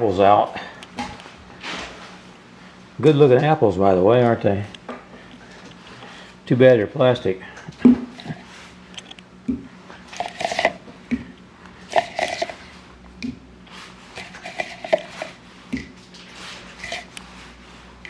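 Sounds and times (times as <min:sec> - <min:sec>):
rustling handling noises: 0:10.1 - 0:10.8, 0:13.7 - 0:15.4, 0:16.0 - 0:17.9.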